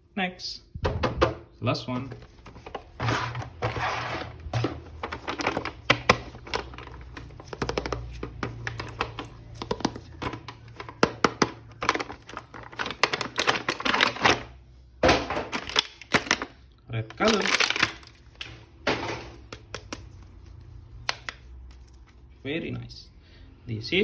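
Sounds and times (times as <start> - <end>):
plastic packaging clicks and taps: 5.0 - 14.4, 15.5 - 16.5, 19.4 - 20.3, 21.0 - 21.4.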